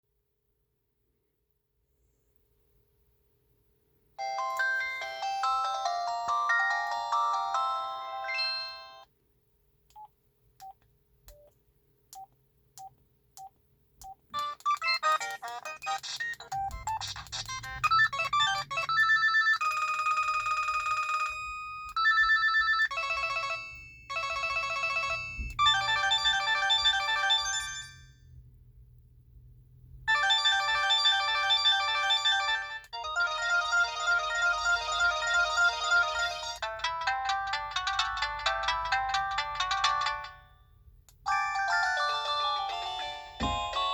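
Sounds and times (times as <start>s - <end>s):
phone ringtone melody: 4.2s - 9.1s, 14.4s - 28.2s, 30.1s - 40.6s, 41.3s - 43.9s.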